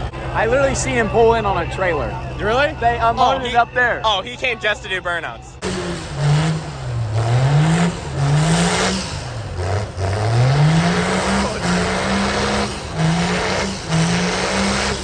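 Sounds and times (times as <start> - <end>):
diesel truck engine revving: 5.5 - 15.0.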